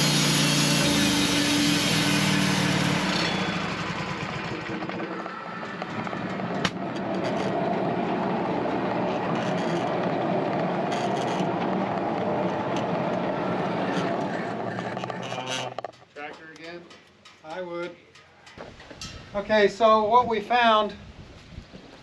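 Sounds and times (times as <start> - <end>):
engine hum: 0.0 - 16.2
sawmill machinery rattling: 0.0 - 17.0.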